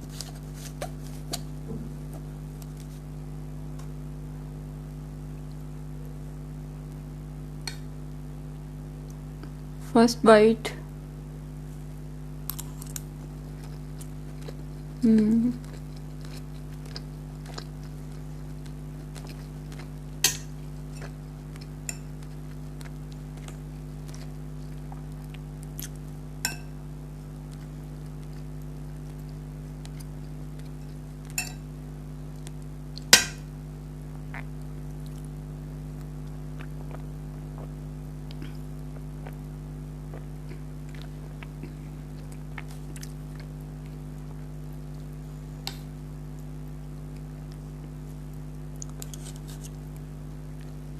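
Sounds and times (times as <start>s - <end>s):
steady low hum: 0.0s - 50.9s
faint chewing: 12.5s - 20.0s, 20.8s - 26.1s, 40.1s - 46.5s, 47.1s - 50.8s
spoon clinking on a plate: 31.4s - 31.6s.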